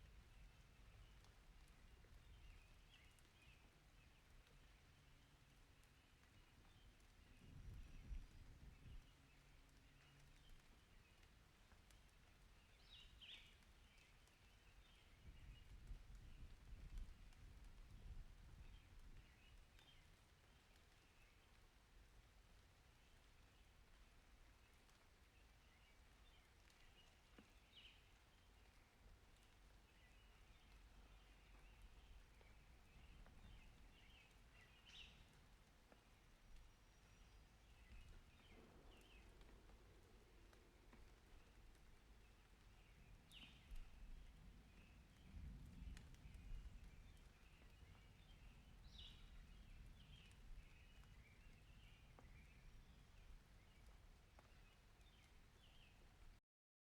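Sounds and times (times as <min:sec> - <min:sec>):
faint low rumble: 0:27.7 - 0:56.4.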